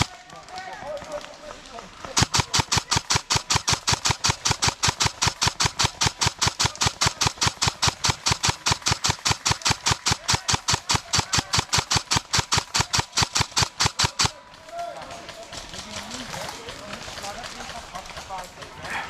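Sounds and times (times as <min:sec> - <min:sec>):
rapid mechanical knocking: 0:02.2 - 0:14.3.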